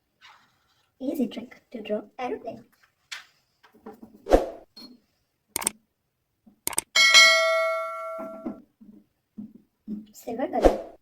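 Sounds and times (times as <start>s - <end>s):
sharp clicks: 5.5s - 5.8s, 6.6s - 6.9s
bright bell-like ding: 7.0s - 8.6s.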